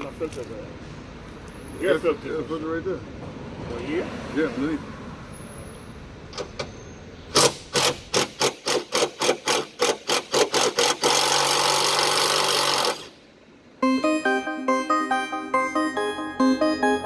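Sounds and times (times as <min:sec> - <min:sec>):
impact wrench hammering: 0:07.4 - 0:13.0
music: 0:13.8 - 0:17.0.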